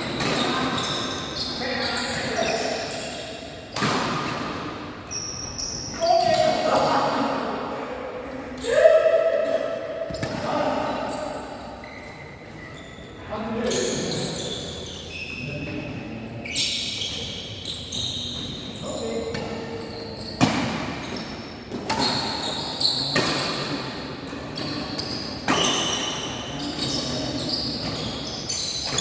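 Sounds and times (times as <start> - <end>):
high-pitched shoe squeaks: 16.4 - 19.2.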